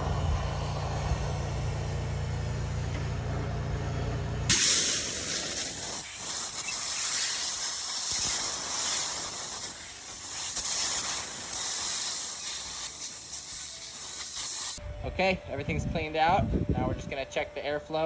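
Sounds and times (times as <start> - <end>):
compressed air hissing loudly: 4.5 - 14.8.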